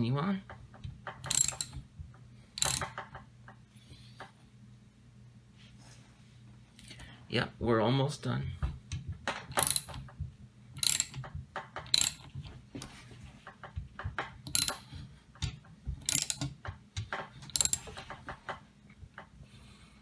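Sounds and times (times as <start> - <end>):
barrel press clicking and creaking: 0.5 - 1.9, 2.6 - 3.6, 8.9 - 10.2, 10.8 - 18.6.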